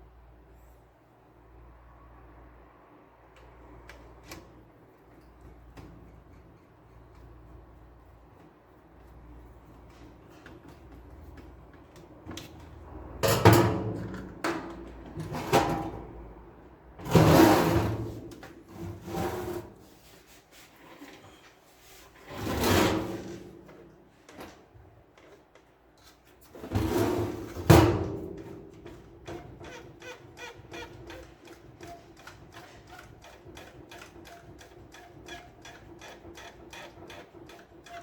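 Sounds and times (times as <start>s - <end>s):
hard objects clunking and scraping: 12.0s - 16.2s.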